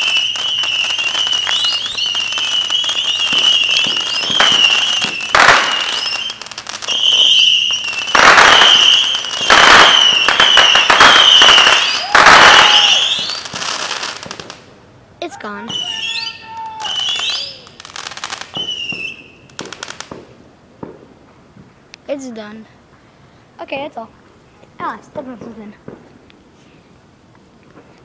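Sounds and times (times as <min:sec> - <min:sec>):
shrill firework whistle: 0:00.0 - 0:13.5, 0:15.6 - 0:17.8, 0:18.5 - 0:19.5
loud firework blasts: 0:00.0 - 0:14.7, 0:15.5 - 0:21.7.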